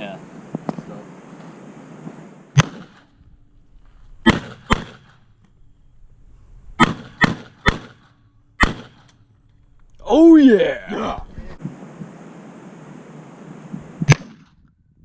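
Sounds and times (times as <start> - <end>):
gunshots with echo: 2.5 - 3.1, 4.2 - 5.2, 6.8 - 8.0, 8.6 - 9.0.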